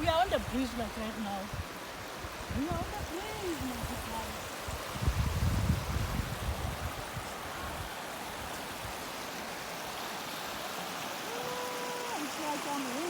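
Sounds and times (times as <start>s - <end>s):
wind buffeting microphone: 0.0s - 9.0s
river water rushing: 0.0s - 13.0s.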